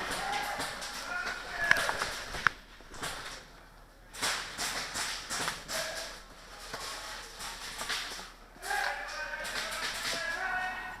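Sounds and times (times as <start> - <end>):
sharp cracks: 4.1 - 10.7.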